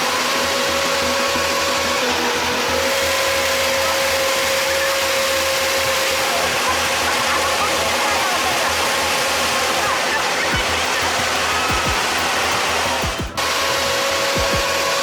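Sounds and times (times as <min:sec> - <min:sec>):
machine humming with high whine: 0:00.0 - 0:15.0.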